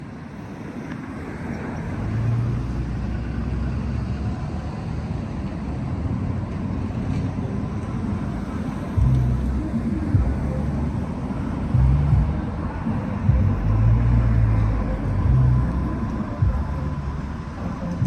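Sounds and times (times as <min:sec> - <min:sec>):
vehicle rumble: 0:00.0 - 0:18.0.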